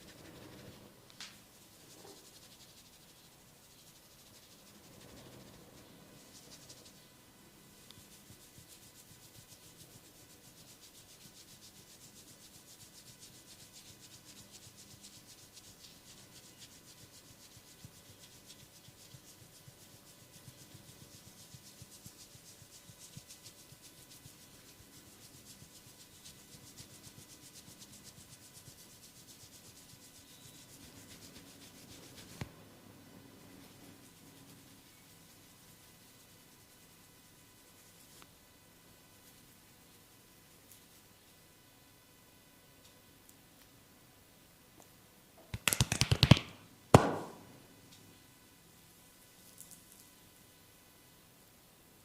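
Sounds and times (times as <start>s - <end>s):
fingers scratching through hair: 0.0s - 7.1s, 7.8s - 32.5s, 45.5s - 47.4s.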